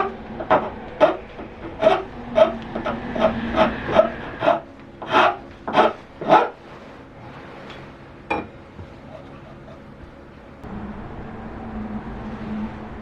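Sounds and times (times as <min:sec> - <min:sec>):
hand tool working wood: 0:00.0 - 0:08.0.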